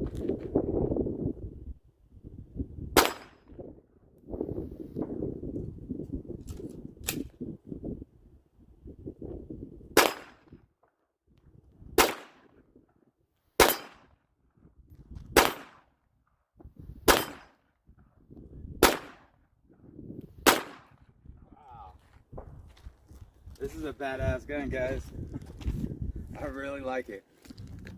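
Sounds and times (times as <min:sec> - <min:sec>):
pistol shots: 0:03.0 - 0:03.4, 0:10.0 - 0:10.5, 0:12.0 - 0:12.5, 0:13.6 - 0:14.1, 0:15.3 - 0:15.9, 0:17.1 - 0:17.6, 0:18.8 - 0:19.3, 0:20.4 - 0:20.9.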